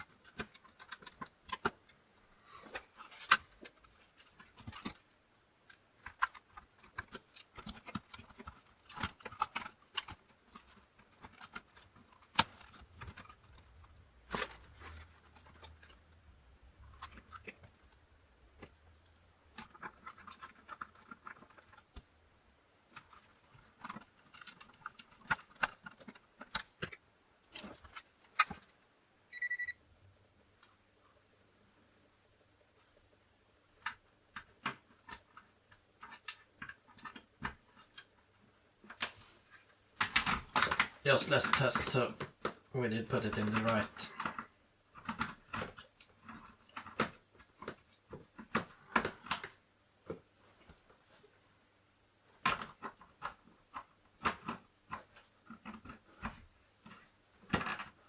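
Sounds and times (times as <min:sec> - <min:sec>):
plastic and metal parts clattering: 0:00.0 - 0:02.0, 0:02.6 - 0:05.1, 0:05.7 - 0:22.2, 0:22.8 - 0:28.8, 0:33.8 - 0:38.2, 0:38.8 - 0:51.2, 0:52.3 - 0:58.0
short high beep: 0:29.3 - 0:29.8.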